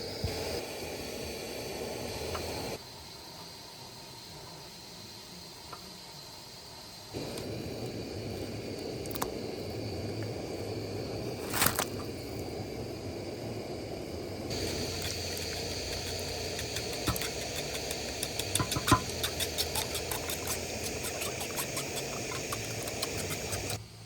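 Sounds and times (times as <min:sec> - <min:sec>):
high steady hiss: 0:00.0 - 0:24.0
flowing water rushing: 0:14.5 - 0:23.8.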